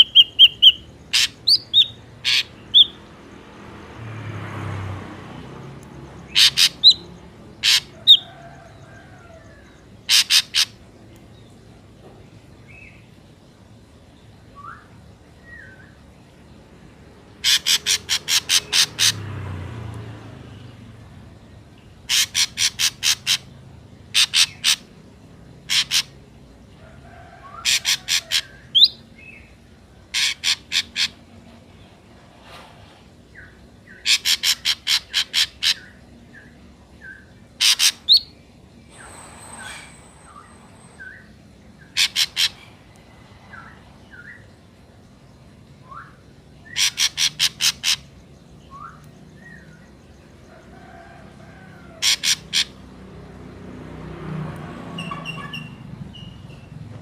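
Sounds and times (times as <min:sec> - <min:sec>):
bird harsh rapid calls: 0:00.0 - 0:03.0, 0:06.3 - 0:08.4, 0:10.0 - 0:10.8, 0:17.4 - 0:19.3, 0:22.0 - 0:25.0, 0:25.6 - 0:26.2, 0:27.4 - 0:29.0, 0:30.1 - 0:31.3, 0:33.9 - 0:36.0, 0:37.6 - 0:44.5, 0:46.6 - 0:49.0, 0:51.8 - 0:52.9.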